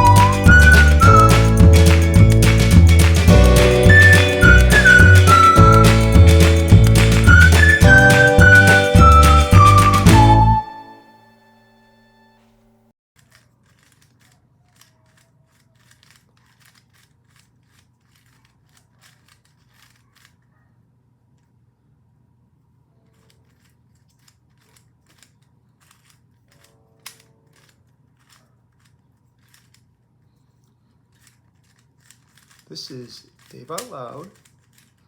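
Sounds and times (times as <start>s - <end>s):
puzzle cube twisting clicks: 13.2s - 20.5s, 23.1s - 35.0s.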